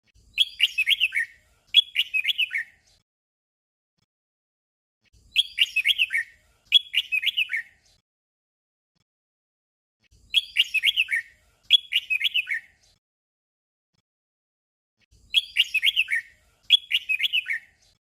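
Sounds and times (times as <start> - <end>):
bulbul singing: 0.2 - 2.8, 5.2 - 7.9, 10.1 - 12.8, 15.1 - 18.0.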